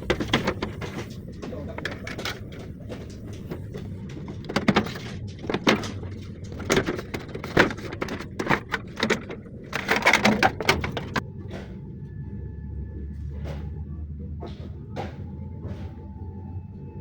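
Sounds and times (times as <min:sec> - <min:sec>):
knocks and clatter: 0:00.0 - 0:11.8
low steady hum: 0:00.0 - 0:17.0.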